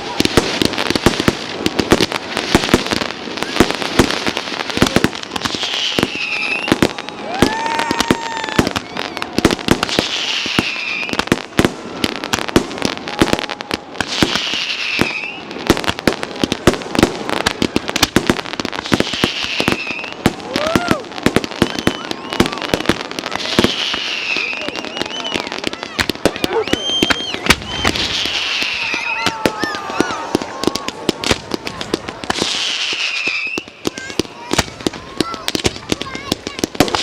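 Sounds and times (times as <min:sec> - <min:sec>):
fireworks bangs and crackles: 0:00.0 - 0:37.0
high falling whistle: 0:05.8 - 0:09.1, 0:26.4 - 0:30.3, 0:32.9 - 0:33.8.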